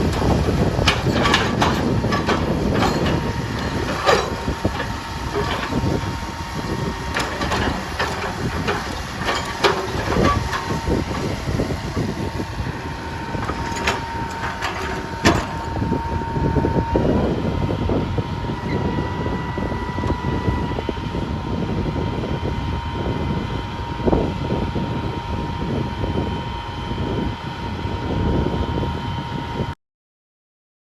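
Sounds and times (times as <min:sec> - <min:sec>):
sharp knocks and clanks: 0:00.0 - 0:06.2, 0:07.1 - 0:11.4, 0:12.8 - 0:16.2
thin steady whine: 0:00.0 - 0:27.2
heavy machine engine rumble: 0:00.0 - 0:28.1.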